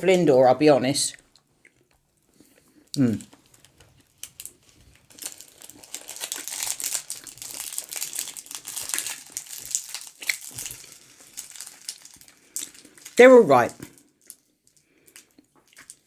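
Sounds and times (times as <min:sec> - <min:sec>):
candy wrapper crinkling: 0:03.2 - 0:16.0.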